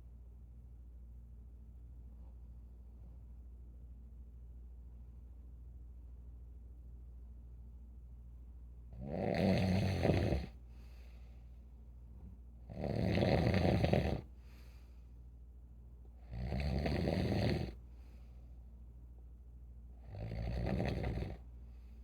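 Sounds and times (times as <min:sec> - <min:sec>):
steady low hum: 0:00.0 - 0:22.0
person snoring: 0:09.0 - 0:10.6, 0:12.7 - 0:14.3, 0:16.3 - 0:17.8, 0:20.0 - 0:21.4
faint breaths: 0:10.5 - 0:11.8, 0:14.2 - 0:15.3, 0:17.7 - 0:18.7, 0:20.1 - 0:22.0.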